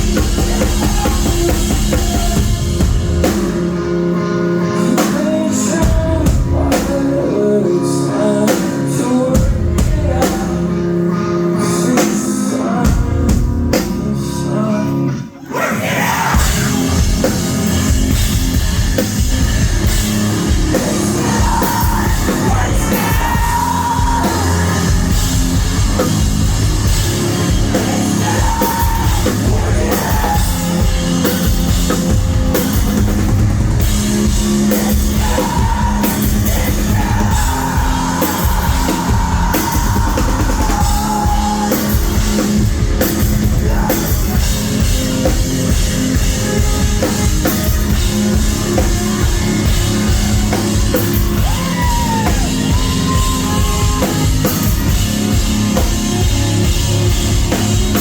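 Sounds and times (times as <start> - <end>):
pounding drum kit: 0.0 - 11.1, 11.7 - 14.3, 15.7 - 58.0
live rock band playing: 0.0 - 58.0
person yelling or singing: 0.2 - 2.8, 20.7 - 25.2, 27.5 - 30.9, 34.7 - 42.2, 50.0 - 54.9.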